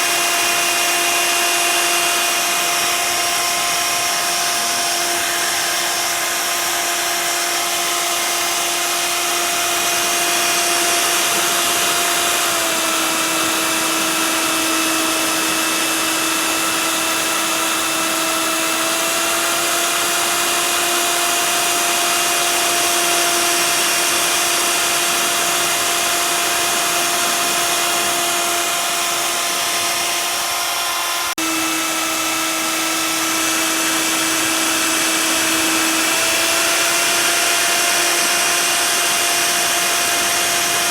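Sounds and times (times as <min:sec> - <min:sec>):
router spindle cutting plastic: 0:00.0 - 0:40.9.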